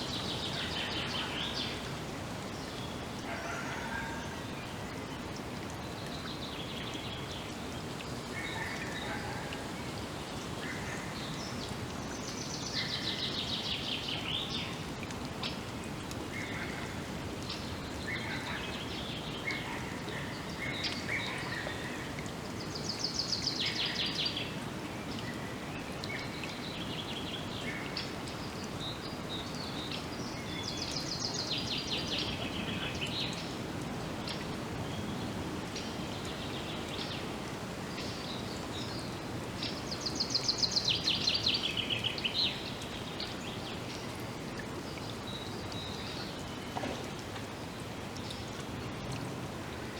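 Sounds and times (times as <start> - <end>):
steady background hiss: 0.0 - 49.9.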